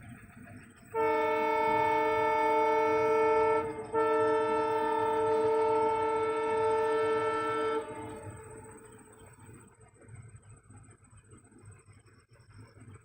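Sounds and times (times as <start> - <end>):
faint rumble: 0.0 - 13.0
train horn blasts: 0.9 - 9.0.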